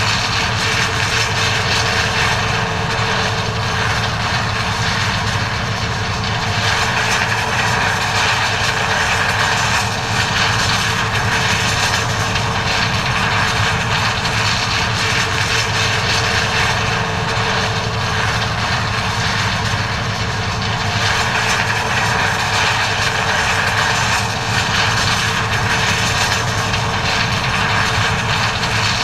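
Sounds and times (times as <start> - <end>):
combine harvester engine drone: 0.0 - 29.0
machinery whine: 0.0 - 29.0.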